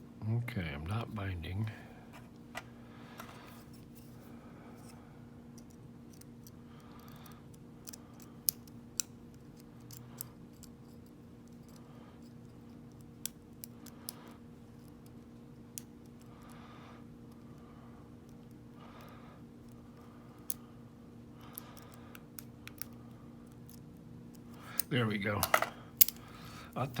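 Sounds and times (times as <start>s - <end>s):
lock pick metallic clicks: 24.8s - 26.3s.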